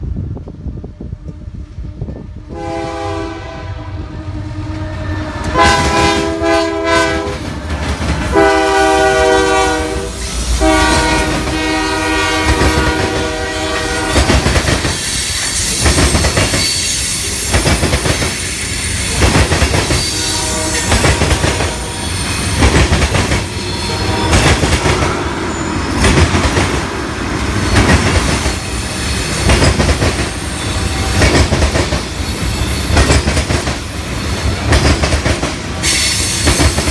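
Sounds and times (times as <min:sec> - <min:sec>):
locomotive air horn blasts: 0:01.6 - 0:07.5, 0:08.3 - 0:14.5, 0:19.8 - 0:22.7, 0:23.5 - 0:25.6
train wheels clacking over rail joints: 0:05.2 - 0:25.2, 0:25.9 - 0:36.9.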